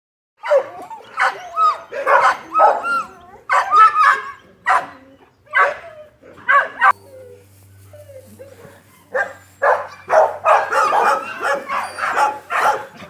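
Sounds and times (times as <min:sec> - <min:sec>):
dog barking: 0:00.4 - 0:07.0, 0:09.1 - 0:13.0.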